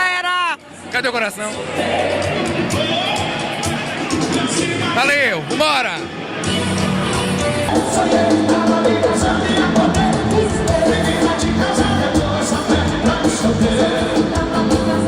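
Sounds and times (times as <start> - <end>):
live band music amplified: 1.8 - 15.0
steady drum beat: 7.7 - 15.0.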